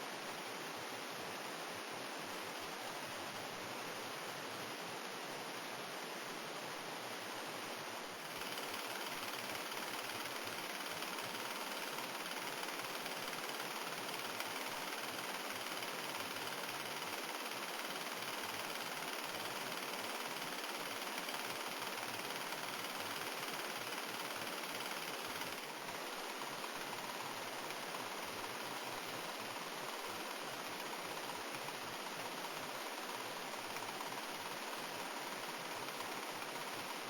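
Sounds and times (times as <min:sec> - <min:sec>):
model engine running: 0:08.2 - 0:37.0.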